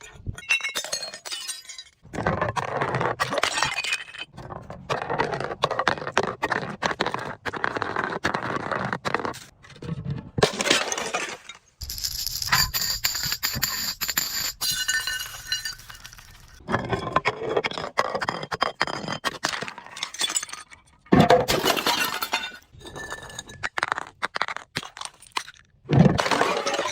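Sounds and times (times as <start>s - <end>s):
glass bottles crushing and shattering: 0.1s - 2.2s, 3.2s - 4.4s, 10.4s - 26.9s
glass shards clinking: 10.7s - 16.6s.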